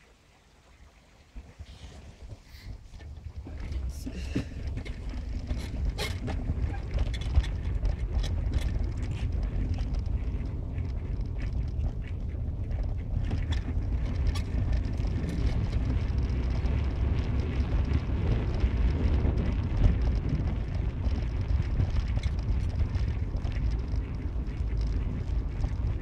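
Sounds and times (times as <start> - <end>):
wind noise: 1.3 - 26.0
faint ticks: 1.4 - 26.0
car engine and road rumble: 1.6 - 26.0.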